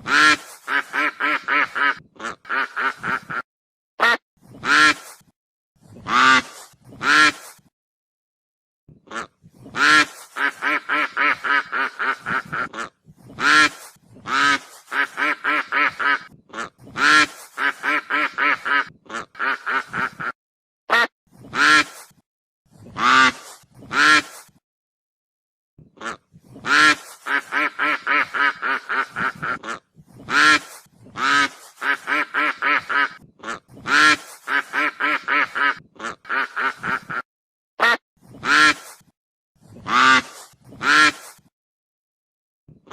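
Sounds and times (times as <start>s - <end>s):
goose calling: 9.1s - 20.3s, 26.0s - 37.2s
goose honks: 26.0s - 37.2s, 39.9s - 41.2s.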